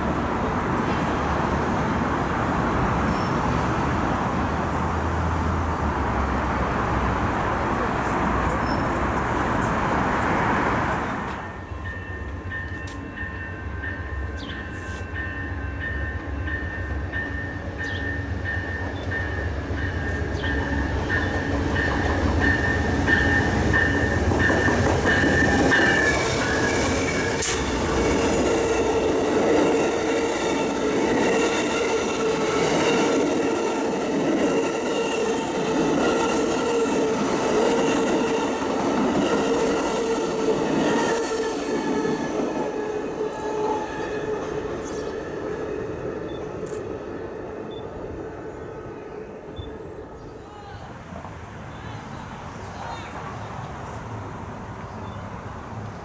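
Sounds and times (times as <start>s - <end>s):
train low rumble: 0.0s - 56.0s
wheels squealing against rails: 8.1s - 46.9s.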